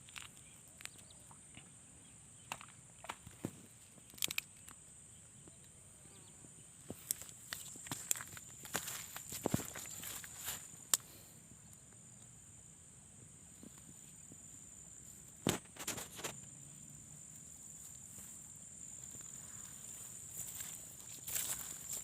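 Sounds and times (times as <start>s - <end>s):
insect chirring: 0.0s - 22.0s
crackles and rustles: 6.8s - 11.0s, 15.2s - 16.6s.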